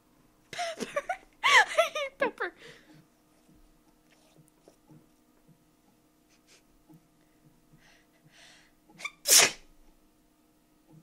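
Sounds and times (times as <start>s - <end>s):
person breathing: 2.6s - 3.0s, 7.7s - 8.8s
person sneezing: 9.0s - 9.6s.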